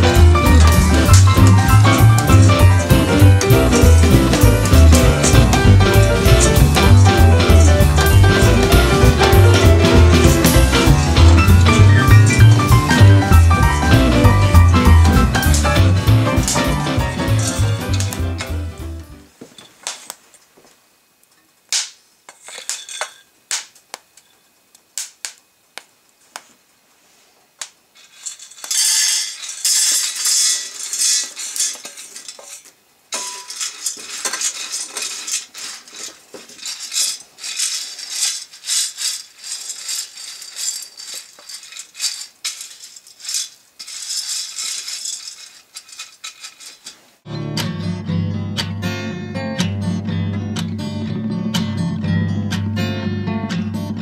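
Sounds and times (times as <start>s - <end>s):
coffee beans rattling: 0.0s - 18.6s, 22.3s - 23.3s, 27.9s - 47.2s.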